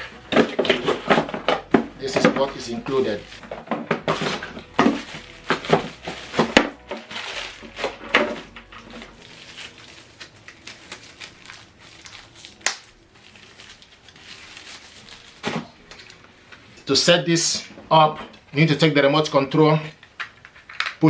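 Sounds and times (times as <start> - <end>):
plastic packaging crinkling: 0.0 - 17.0, 17.6 - 21.0
small accessories clicking and knocking: 19.9 - 21.0.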